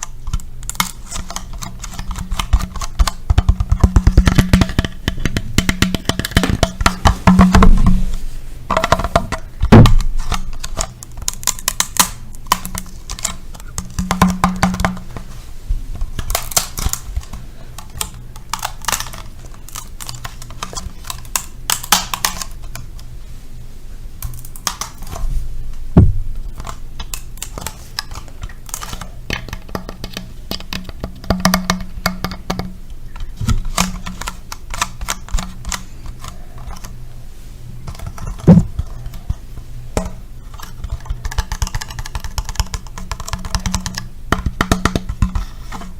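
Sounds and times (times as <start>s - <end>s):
low steady hum: 0.0s - 45.9s
heavier knock: 26.0s - 26.4s.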